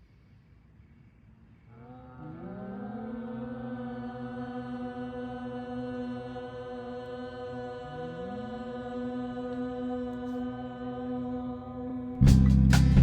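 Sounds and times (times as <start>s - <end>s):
low chant-like musical drone: 1.6s - 13.0s.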